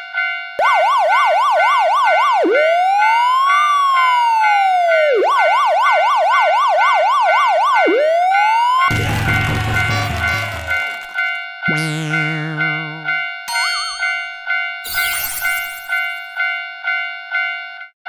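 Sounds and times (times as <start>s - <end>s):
police siren yelp and wail: 0.6s - 11.1s
music: 8.9s - 11.0s.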